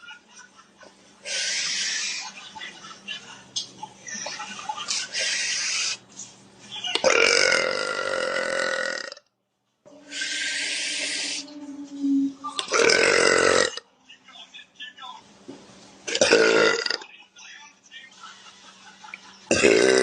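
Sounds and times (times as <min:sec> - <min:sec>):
woman burping loudly: 0:07.0 - 0:09.3, 0:12.6 - 0:13.8, 0:16.1 - 0:17.0, 0:19.5 - 0:20.0.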